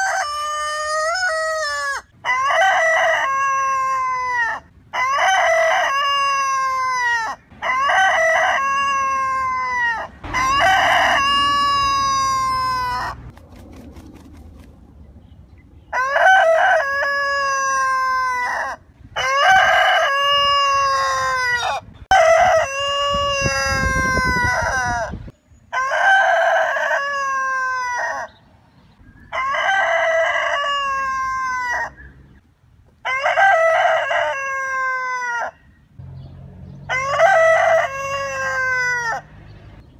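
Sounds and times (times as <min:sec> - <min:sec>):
rooster crowing: 0:00.0 - 0:13.3, 0:15.9 - 0:28.3, 0:29.3 - 0:32.0, 0:33.0 - 0:35.6, 0:36.9 - 0:39.3.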